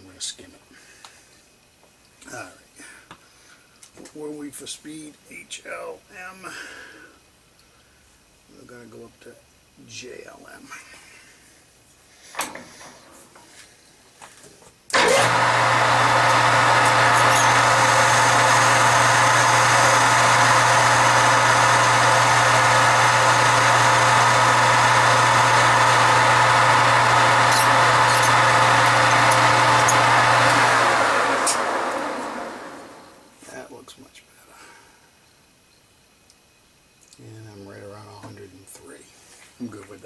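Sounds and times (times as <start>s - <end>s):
metal lathe running: 14.9s - 33.2s.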